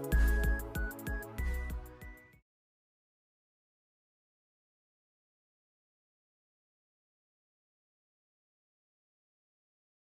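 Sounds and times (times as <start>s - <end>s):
electronic background music: 0.0s - 2.4s.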